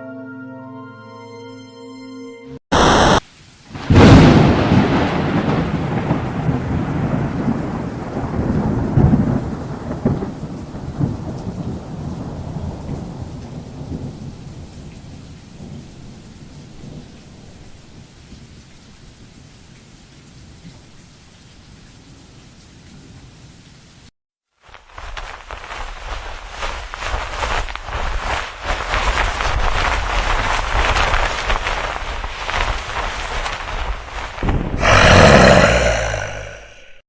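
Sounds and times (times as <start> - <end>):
steady rain: 2.8 - 24.1, 24.7 - 37.0
thunder clap and rumble: 3.8 - 14.6, 28.8 - 35.3.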